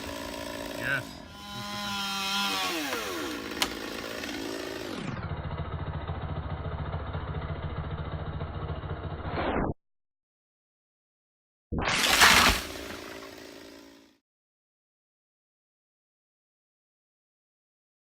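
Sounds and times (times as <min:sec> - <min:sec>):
chainsaw engine idling: 0:00.0 - 0:09.2, 0:12.8 - 0:14.1.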